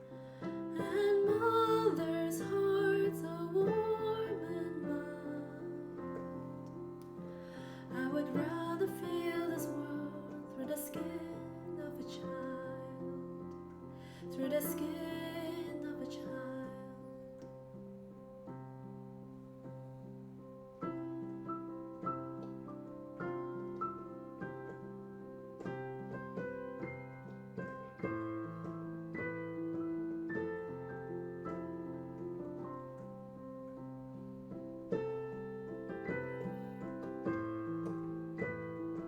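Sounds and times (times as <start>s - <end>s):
slow piano melody: 0.0s - 39.0s.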